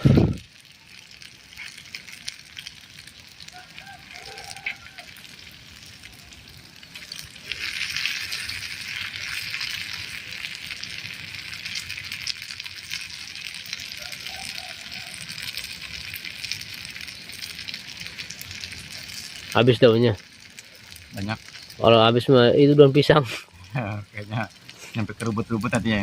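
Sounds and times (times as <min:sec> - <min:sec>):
leaves sizzling in hot oil: 0:00.0 - 0:26.0.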